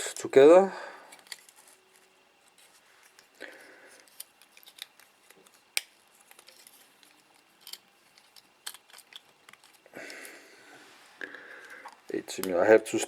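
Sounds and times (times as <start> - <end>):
small tools clicking on plastic parts: 4.0 - 9.8.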